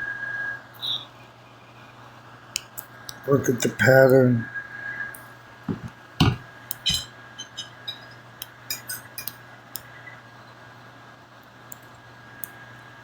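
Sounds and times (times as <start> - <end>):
faint steady hum: 0.0 - 13.0
soft knocks: 5.7 - 7.1
small clicks and clinks: 6.2 - 9.9.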